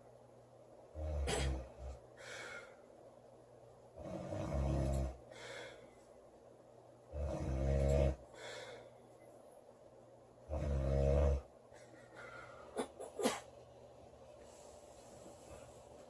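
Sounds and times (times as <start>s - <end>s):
woman snoring: 4.0s - 5.2s, 7.1s - 8.2s, 10.5s - 11.5s.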